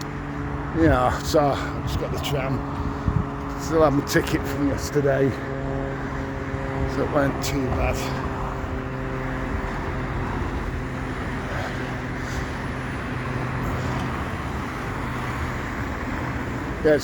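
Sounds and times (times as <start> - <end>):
low engine hum: 0.0 - 17.0
road traffic noise: 0.0 - 17.0.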